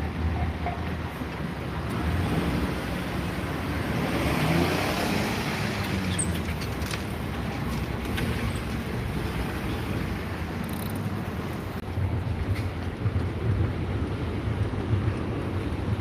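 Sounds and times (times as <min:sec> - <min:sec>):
traffic noise: 0:00.0 - 0:16.0
vehicle passing: 0:01.9 - 0:06.5.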